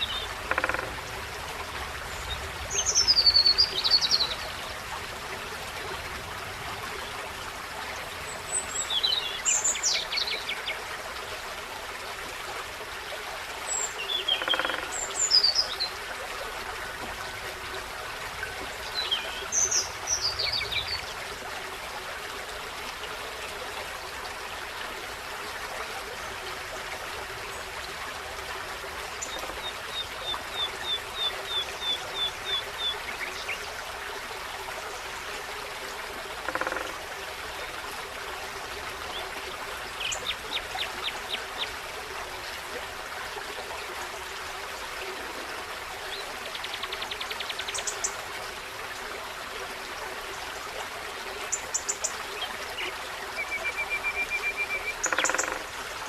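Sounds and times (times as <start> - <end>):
stream running: 0.0 - 56.0
songbirds singing: 2.0 - 4.7, 13.7 - 15.9, 18.6 - 21.2, 51.5 - 55.6.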